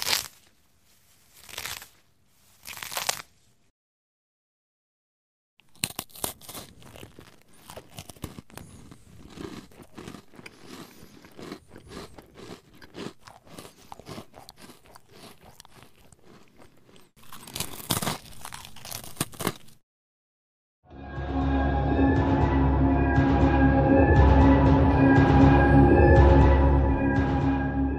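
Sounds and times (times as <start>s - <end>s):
potato chips crunching: 0.0s - 0.6s, 1.3s - 3.4s, 5.6s - 19.8s.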